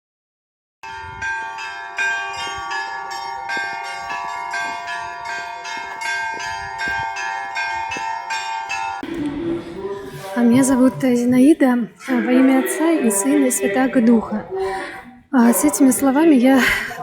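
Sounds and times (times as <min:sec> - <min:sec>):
church bells pealing: 0:00.8 - 0:14.4.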